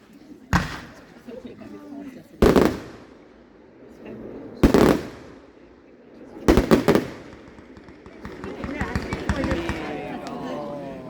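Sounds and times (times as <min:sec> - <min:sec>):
fireworks bangs and cracks: 0:00.5 - 0:01.5, 0:02.4 - 0:03.4, 0:04.6 - 0:05.5, 0:06.4 - 0:10.6.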